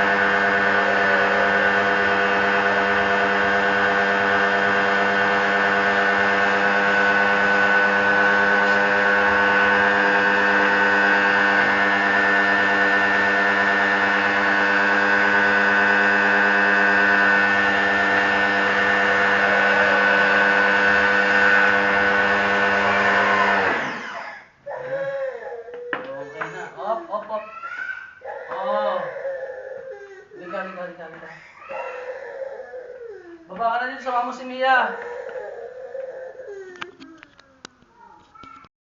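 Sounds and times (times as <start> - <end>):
pressure washer motor whining: 0.0 - 24.5.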